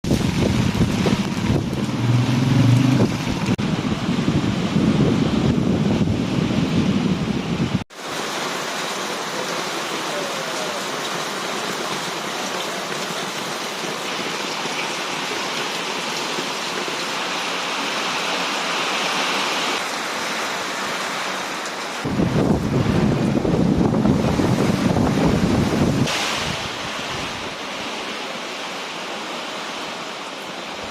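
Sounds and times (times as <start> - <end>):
wind buffeting microphone: 0.0 - 7.8, 22.0 - 27.6
heavy rain pouring: 0.0 - 30.9.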